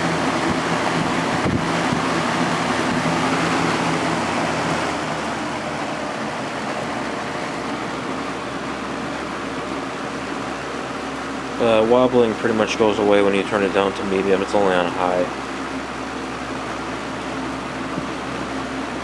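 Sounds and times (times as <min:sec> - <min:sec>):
box fan running: 0:00.0 - 0:19.0.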